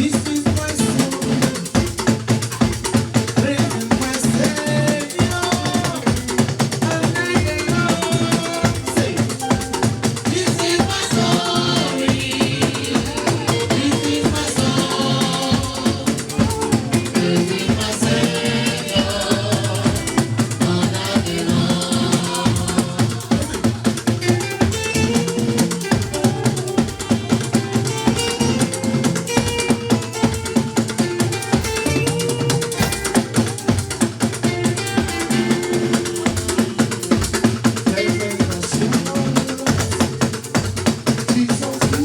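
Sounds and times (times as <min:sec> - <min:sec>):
drums and shakers beat: 0:00.0 - 0:42.0
guitar: 0:00.0 - 0:42.0
bass line: 0:07.4 - 0:27.4
choir singing a hymn: 0:07.9 - 0:23.9.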